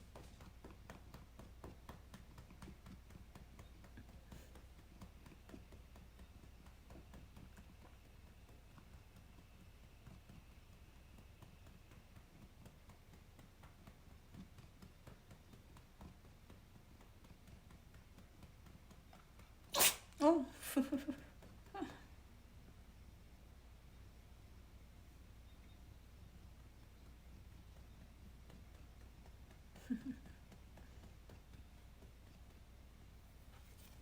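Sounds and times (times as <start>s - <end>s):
hand patting cat fur: 0.0s - 20.1s, 26.3s - 34.0s.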